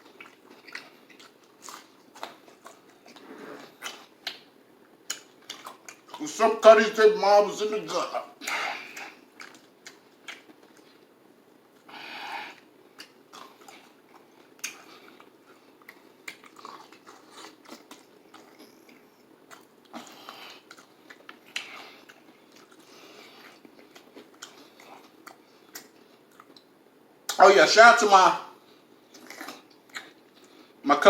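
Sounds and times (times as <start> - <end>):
person chewing crunchy food: 0.0 - 6.3, 8.4 - 26.8, 28.8 - 30.8
wet mouth clicks: 5.1 - 6.1.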